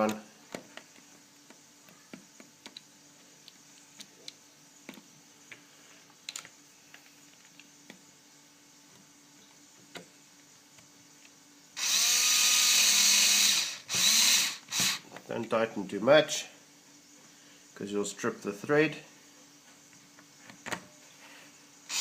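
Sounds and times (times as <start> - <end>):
power drill-driver whirring: 11.8 - 15.0.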